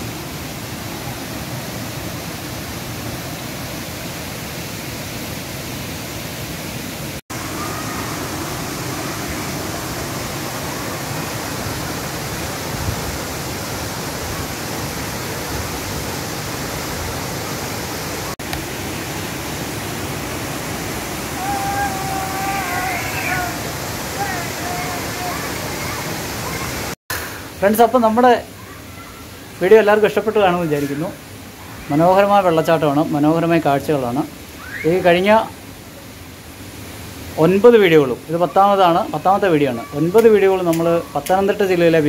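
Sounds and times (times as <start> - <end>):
waterfall rushing: 0.0 - 42.0.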